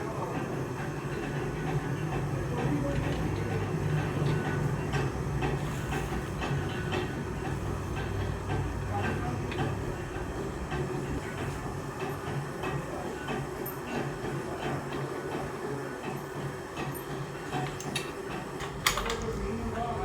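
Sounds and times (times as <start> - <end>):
regular machine clacking: 1.1 - 20.0
machine humming: 18.4 - 20.0.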